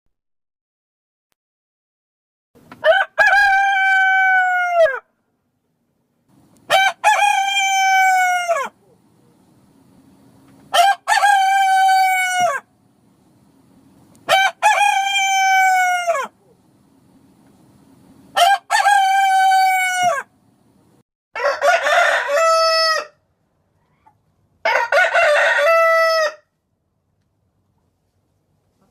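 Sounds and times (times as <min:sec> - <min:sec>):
parrot imitating rooster crowing: 0:02.8 - 0:05.1, 0:06.7 - 0:08.8, 0:10.7 - 0:12.7, 0:14.3 - 0:16.4, 0:18.4 - 0:20.3, 0:21.4 - 0:23.2, 0:24.6 - 0:26.5.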